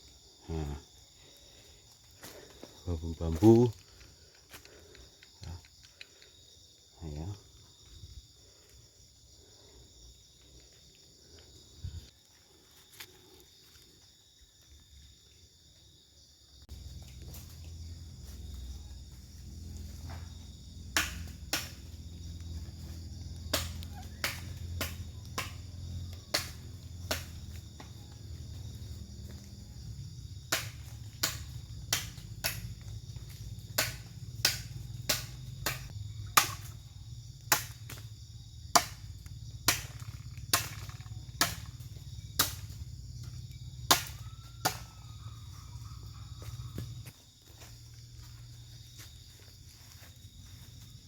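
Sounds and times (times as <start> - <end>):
high insect chorus: 0.0 - 51.0.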